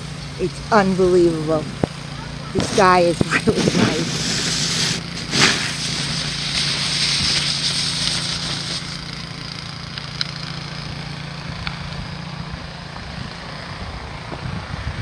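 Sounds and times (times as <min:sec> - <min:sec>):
engine running: 0:00.0 - 0:15.0
footsteps crunching in snow: 0:02.6 - 0:09.0.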